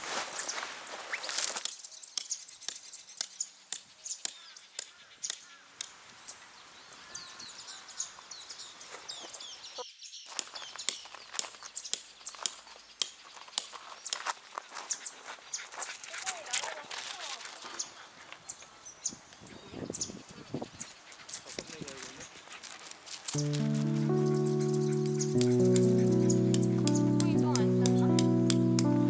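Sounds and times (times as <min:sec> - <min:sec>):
birds chirping: 0:01.7 - 0:29.0.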